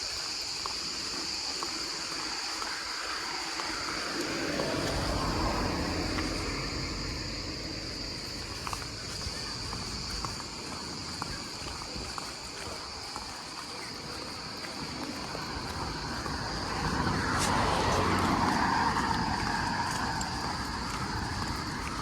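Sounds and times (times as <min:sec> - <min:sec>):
high buzz of insects: 0:00.0 - 0:22.0
vehicle passing: 0:03.2 - 0:09.6, 0:15.2 - 0:22.0.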